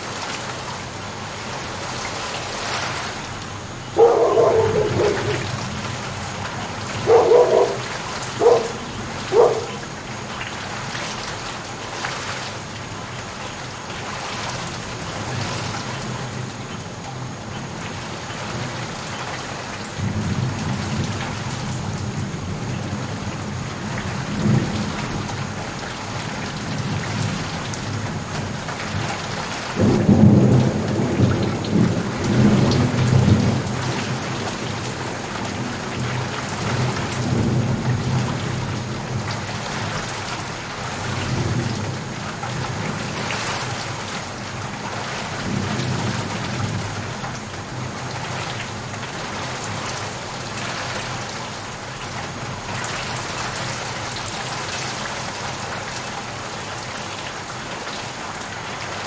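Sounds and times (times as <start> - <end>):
steady rain: 0.0 - 59.0
rolling thunder: 3.7 - 10.4.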